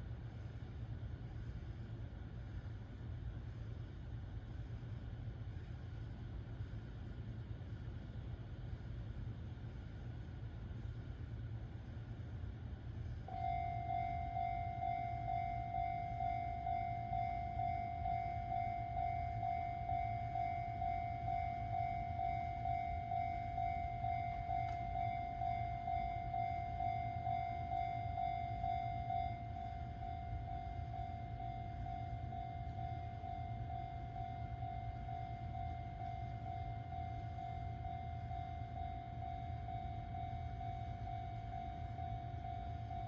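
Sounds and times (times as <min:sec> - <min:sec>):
level crossing bell dinging: 0:13.3 - 0:43.0.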